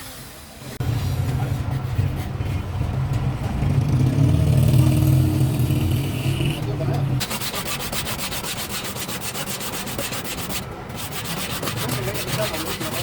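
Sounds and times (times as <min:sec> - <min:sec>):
hand sanding strokes: 0:07.2 - 0:13.0.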